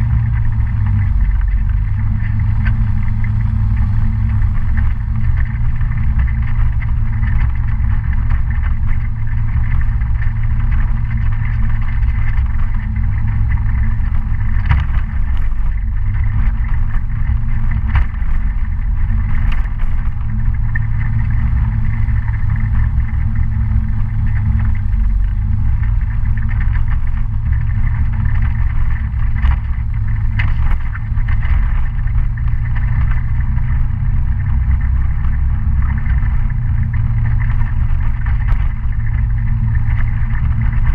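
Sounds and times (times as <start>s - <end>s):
scooter engine rumbling: 0.0s - 40.9s.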